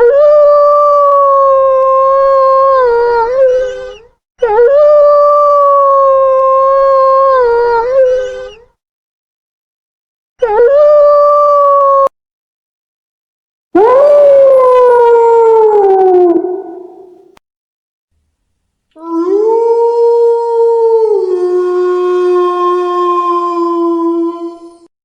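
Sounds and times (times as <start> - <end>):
wolf howling: 13.8 - 17.4, 19.0 - 24.8.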